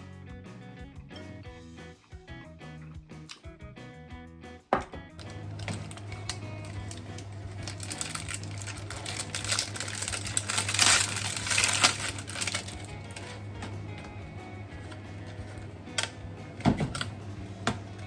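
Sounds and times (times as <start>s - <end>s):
packaging crinkling and crackling: 5.2s - 14.1s.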